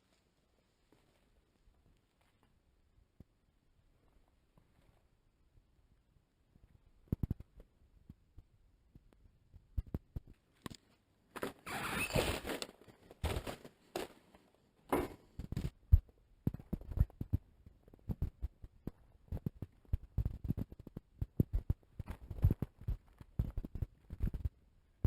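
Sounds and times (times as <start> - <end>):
footsteps on debris: 12.3 - 14.2.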